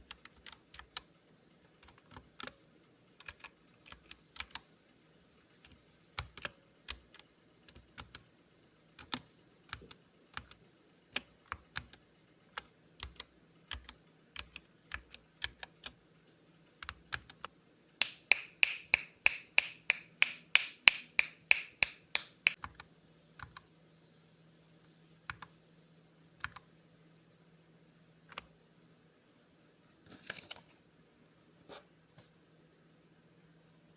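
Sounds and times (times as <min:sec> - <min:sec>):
mechanical keyboard typing: 0:00.0 - 0:01.2, 0:01.8 - 0:02.6, 0:03.2 - 0:04.7, 0:05.6 - 0:08.3, 0:08.9 - 0:16.0, 0:16.8 - 0:23.6, 0:26.4 - 0:26.7.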